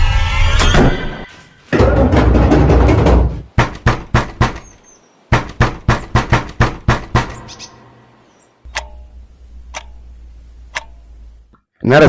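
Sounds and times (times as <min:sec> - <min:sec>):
heavy knocks: 0:01.7 - 0:07.6
low steady hum: 0:06.4 - 0:11.6
clock ticking: 0:08.6 - 0:11.2.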